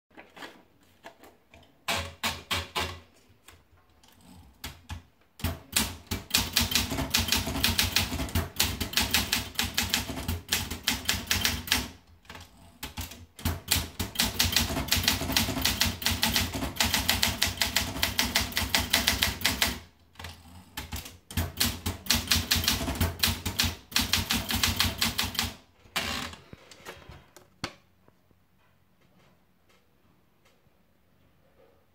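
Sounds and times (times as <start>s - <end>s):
manual typewriter typing: 1.8s - 3.1s, 4.0s - 26.3s.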